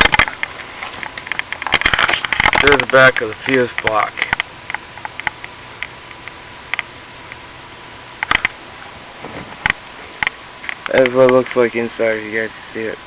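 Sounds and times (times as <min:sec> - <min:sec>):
steady hiss: 0:00.0 - 0:13.0
small handling clicks and taps: 0:09.6 - 0:11.4.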